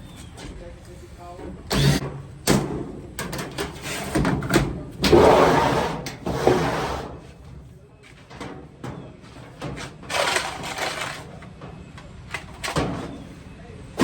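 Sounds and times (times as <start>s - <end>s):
sheet metal scraping: 5.0s - 7.3s.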